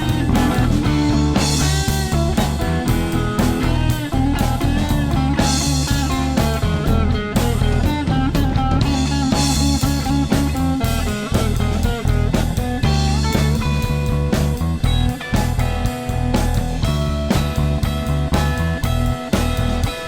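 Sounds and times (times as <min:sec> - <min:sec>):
bass guitar: 0:00.0 - 0:20.0
drum kit: 0:00.0 - 0:20.0
electric guitar bending notes: 0:00.0 - 0:20.0.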